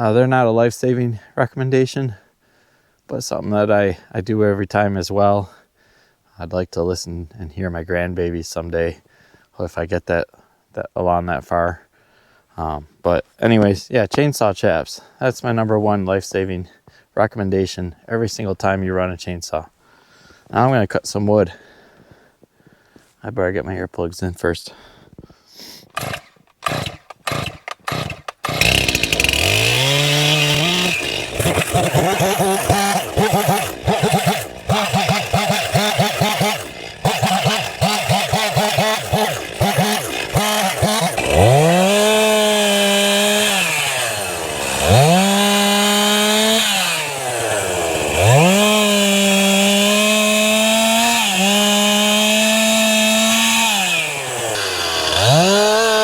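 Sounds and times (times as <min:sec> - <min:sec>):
chainsaw revving and idling: 0:25.9 - 0:56.0.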